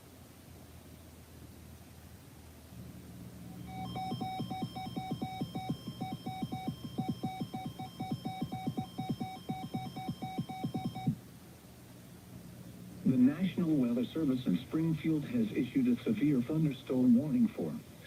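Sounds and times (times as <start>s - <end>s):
buzzing pulse: 3.5s - 11.2s
rapid electronic alert beeps: 3.6s - 11.2s.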